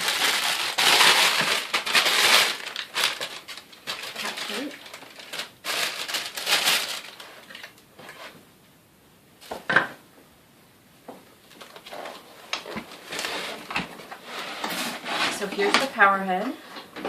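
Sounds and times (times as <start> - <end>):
packaging rustling and crinkling: 0.0 - 8.3, 11.5 - 16.0.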